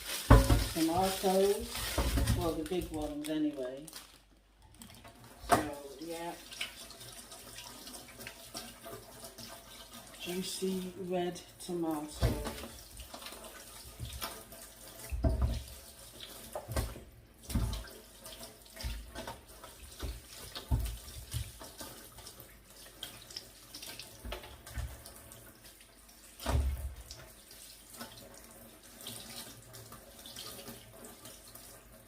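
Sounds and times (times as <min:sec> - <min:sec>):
tap running into sink: 0:00.2 - 0:00.8, 0:13.9 - 0:18.0, 0:18.8 - 0:22.0
knocks and bumps in sink: 0:00.3 - 0:00.8, 0:01.8 - 0:02.6, 0:15.1 - 0:15.7.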